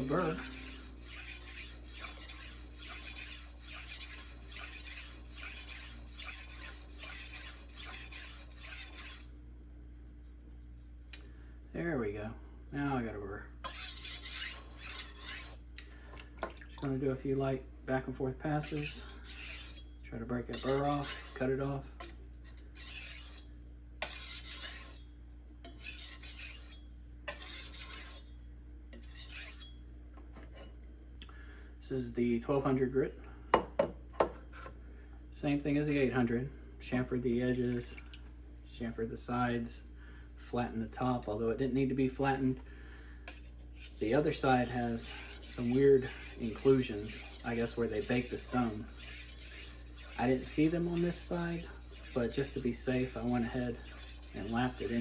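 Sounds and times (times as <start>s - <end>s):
knife scraping on whetstone: 0.0s - 9.3s, 13.6s - 15.6s, 18.6s - 28.3s, 28.9s - 29.8s, 43.3s - 55.0s.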